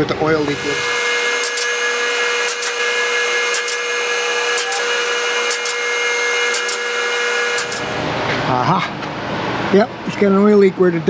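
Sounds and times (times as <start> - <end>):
hydraulic pump motor running: 0.0 - 8.3.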